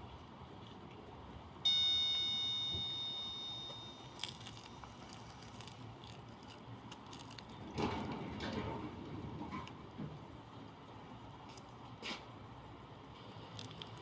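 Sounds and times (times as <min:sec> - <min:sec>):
high chime ringing: 0:01.7 - 0:04.7.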